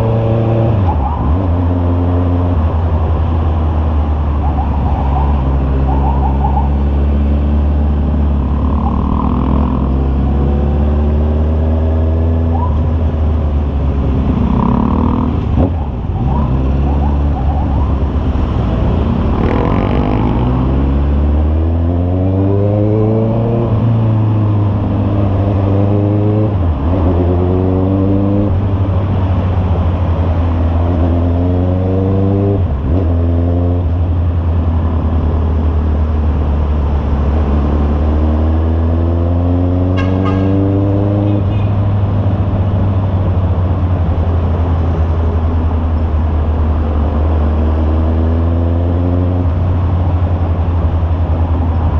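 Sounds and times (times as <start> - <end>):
motorcycle engine accelerating: 5.6 - 12.6, 13.4 - 34.1.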